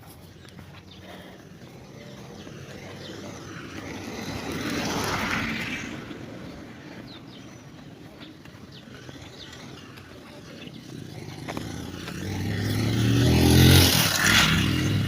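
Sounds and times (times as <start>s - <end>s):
road vehicle passing: 0.0s - 15.0s.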